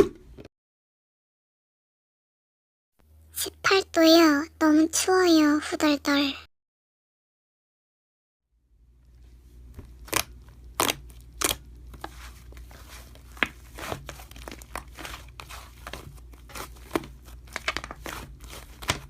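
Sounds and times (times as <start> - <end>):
slime being squished: 9.7 - 19.0
crinkly crackling: 9.9 - 19.0.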